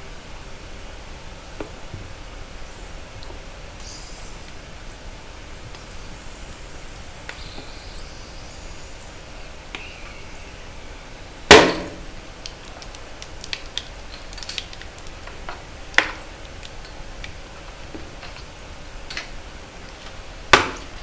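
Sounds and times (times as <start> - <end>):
crumbling chalk crackles: 12.0 - 18.8.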